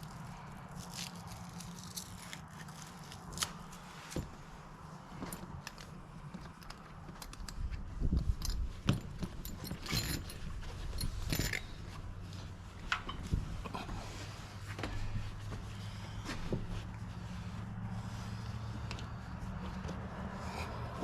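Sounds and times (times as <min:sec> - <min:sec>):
steady low hum: 0:03.1 - 0:21.0.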